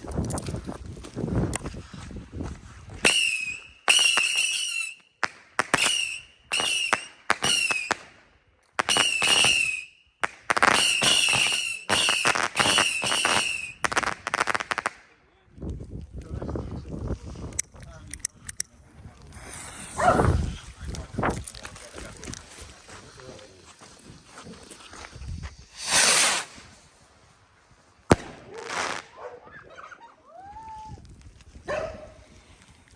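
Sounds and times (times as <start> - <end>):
whistling fireworks: 3.0 - 8.2, 8.8 - 14.8, 19.2 - 20.6, 25.5 - 27.0.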